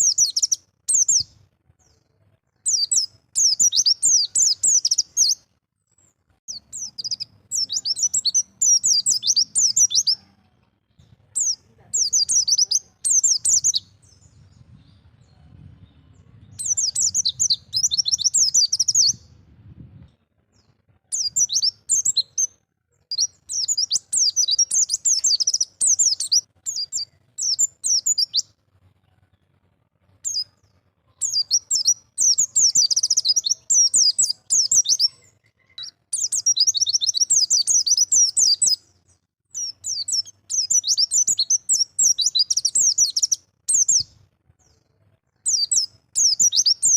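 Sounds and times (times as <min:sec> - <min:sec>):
bird twittering: 0:00.0 - 0:01.3, 0:02.7 - 0:05.4, 0:06.5 - 0:10.2, 0:11.4 - 0:14.0, 0:16.6 - 0:19.2, 0:21.1 - 0:22.5, 0:23.1 - 0:28.4, 0:31.2 - 0:38.8, 0:39.6 - 0:44.1, 0:45.5 - 0:46.9.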